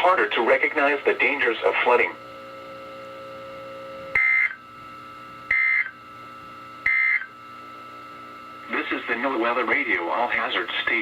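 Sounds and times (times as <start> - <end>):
warbling data tone bursts: 4.2 - 4.6, 5.5 - 5.9, 6.8 - 7.3.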